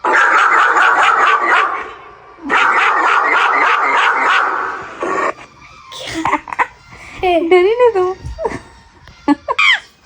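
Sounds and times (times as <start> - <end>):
dog barking rapidly: 0.0 - 4.9.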